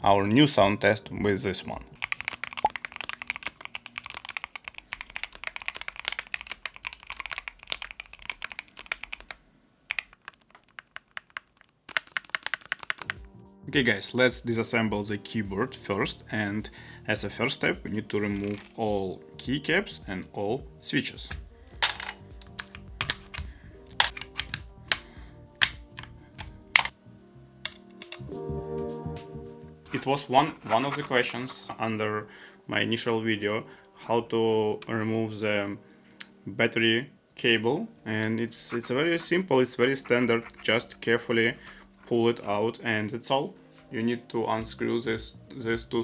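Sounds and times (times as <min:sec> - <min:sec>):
soft background music: 0:00.0 - 0:07.6, 0:12.5 - 0:46.0
keyboard keystroke clicks: 0:02.0 - 0:13.3, 0:21.3 - 0:26.9.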